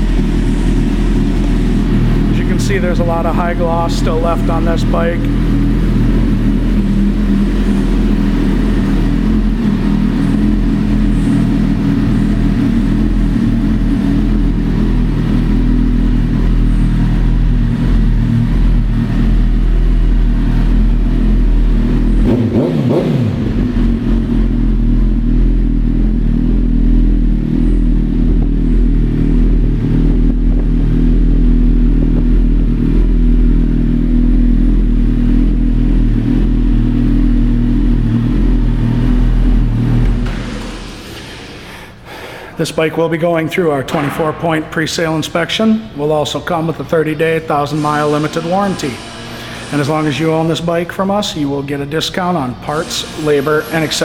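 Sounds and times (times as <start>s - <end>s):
motorcycle engine idling: 0.0s - 41.1s
engine revving: 0.0s - 42.0s, 47.1s - 51.9s, 52.6s - 54.0s.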